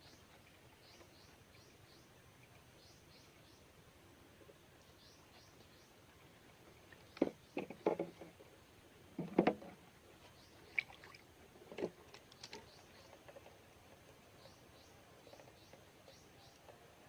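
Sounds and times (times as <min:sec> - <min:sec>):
water splashes: 0:10.6 - 0:12.6.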